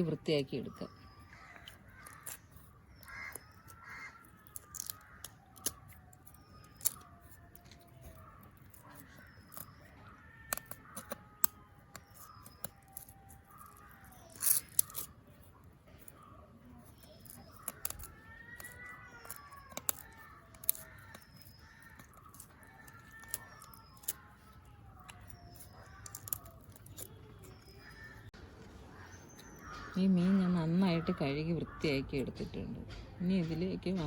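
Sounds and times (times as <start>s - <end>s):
small birds chirping: 0.0s - 34.0s
clicks and scrapes cleaning fish: 1.0s - 28.3s
crows cawing: 1.1s - 5.8s, 28.9s - 32.0s.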